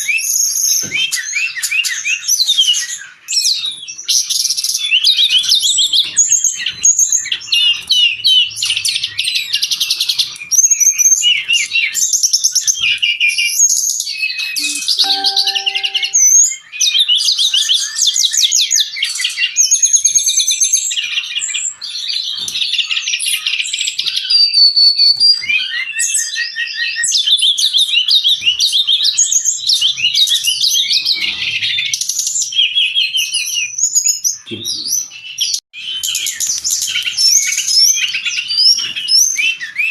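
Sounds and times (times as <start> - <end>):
bird singing high chirps and trills: 14.6 - 16.3.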